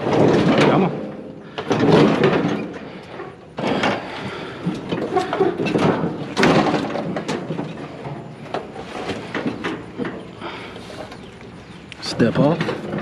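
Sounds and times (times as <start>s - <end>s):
metal rattling and scraping: 0.0s - 13.0s.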